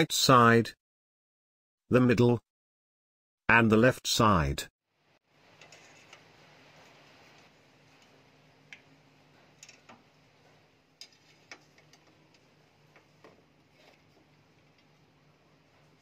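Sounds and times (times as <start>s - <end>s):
faint steady hum: 5.0s - 16.0s.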